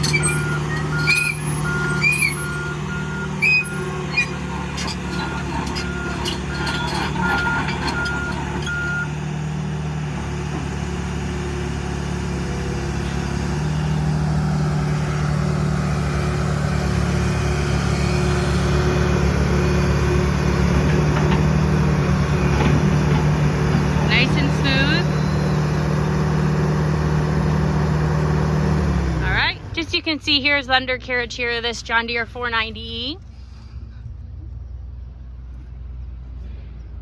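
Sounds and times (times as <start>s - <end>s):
diesel engine running: 0.0s - 37.0s
alarm beeping: 0.2s - 9.1s, 24.2s - 25.8s.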